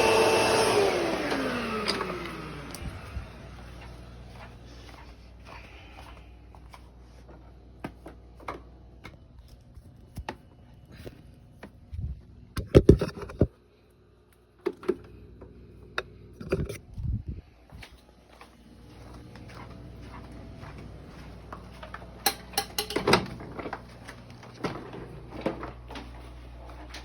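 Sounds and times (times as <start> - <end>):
handling clicks and knocks: 22.2 - 23.8.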